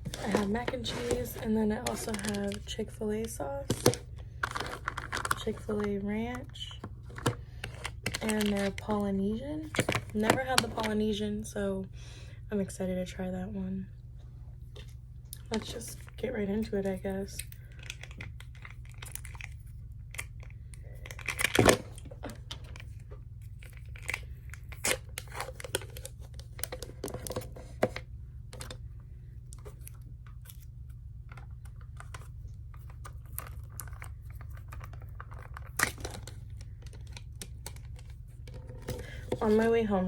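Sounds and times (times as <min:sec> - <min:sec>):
food packaging rustling and crinkling: 0:00.0 - 0:06.0, 0:06.9 - 0:09.0, 0:31.3 - 0:39.7
steady low hum: 0:00.0 - 0:40.0.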